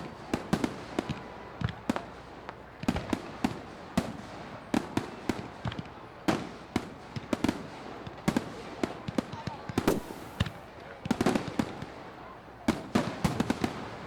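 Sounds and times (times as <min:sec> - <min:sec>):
fireworks bursting with bangs: 0:09.8 - 0:10.8.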